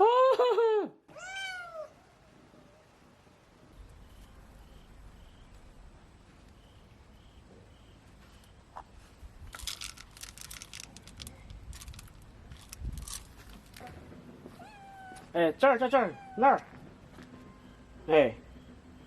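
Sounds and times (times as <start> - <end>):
faint insect chirps: 2.0 - 13.9, 15.3 - 19.0
crackling rustling clicks: 8.4 - 14.0.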